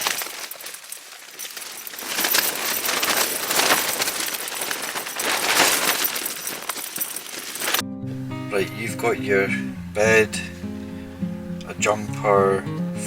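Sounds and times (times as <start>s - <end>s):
tent fabric flapping: 0.0s - 7.8s.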